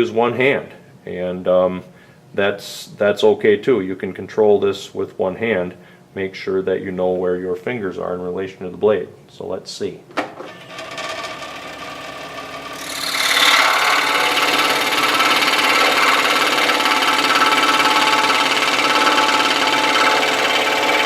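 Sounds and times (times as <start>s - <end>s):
scroll saw cutting wood: 10.4s - 21.0s.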